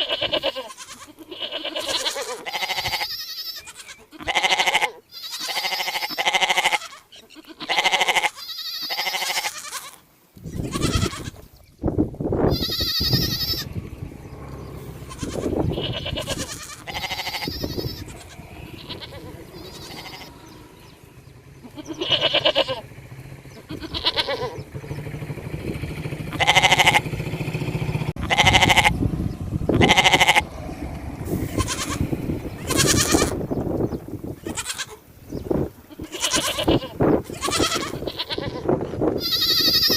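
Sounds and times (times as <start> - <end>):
sheep bleating: 0.0 - 10.0, 10.6 - 11.5, 12.5 - 13.8, 14.5 - 22.8, 23.6 - 24.6, 26.3 - 27.1, 28.2 - 29.0, 29.7 - 30.4, 31.3 - 33.4, 34.4 - 35.0, 35.9 - 39.9
steady low rumble: 10.5 - 39.7.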